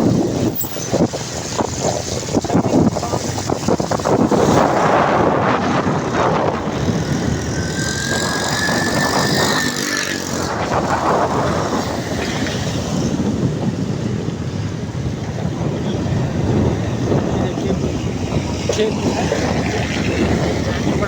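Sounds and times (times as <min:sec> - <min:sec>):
car road and wind noise: 0:00.0 - 0:21.0.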